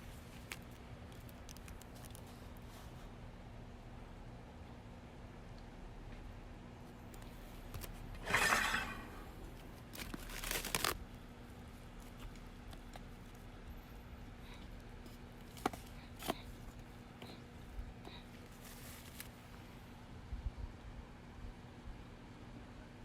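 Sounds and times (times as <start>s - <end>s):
packaging rustling: 9.8s - 11.0s, 18.4s - 19.4s.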